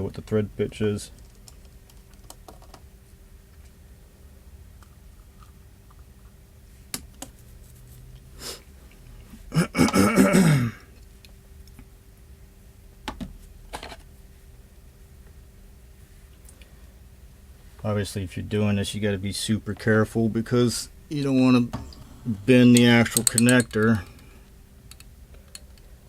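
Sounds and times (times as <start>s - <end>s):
man's throaty vocal sound: 9.5s - 10.8s.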